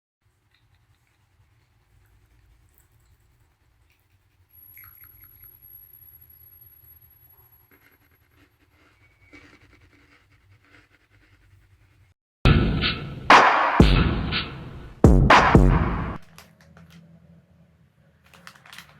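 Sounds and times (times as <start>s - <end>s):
scratching and rustling handling: 0.3s - 4.6s, 7.3s - 12.2s, 18.2s - 18.9s
loud electronic music: 12.5s - 16.2s.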